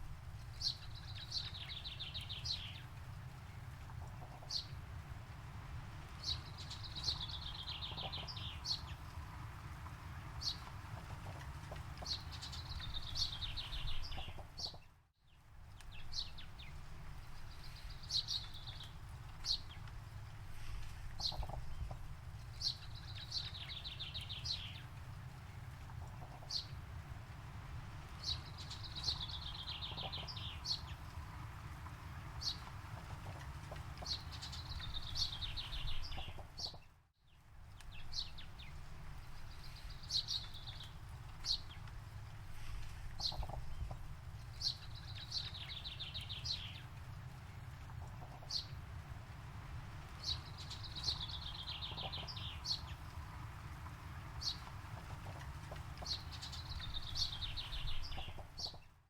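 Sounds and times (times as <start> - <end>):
songbirds chirping and trilling: 0.0 - 59.0
steady low rumble: 15.4 - 36.8, 37.4 - 58.8.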